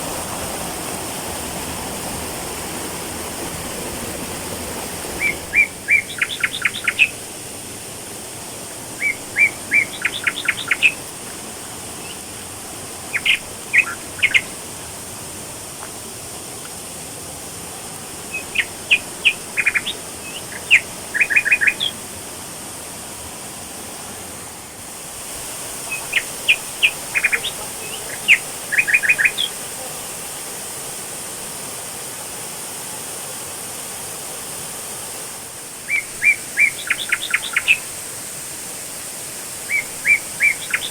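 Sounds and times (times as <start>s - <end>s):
waterfall rushing: 0.0s - 40.9s
bird chirping: 5.2s - 7.2s, 8.9s - 11.2s, 13.0s - 14.5s, 18.3s - 22.0s, 25.8s - 29.6s, 35.8s - 37.8s, 39.6s - 40.9s.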